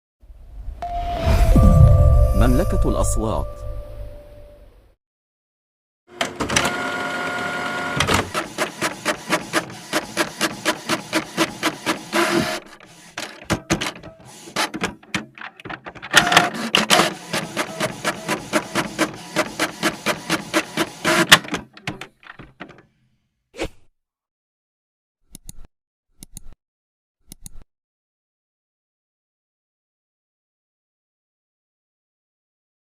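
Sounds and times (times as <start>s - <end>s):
office printer printing: 6.1s - 22.8s.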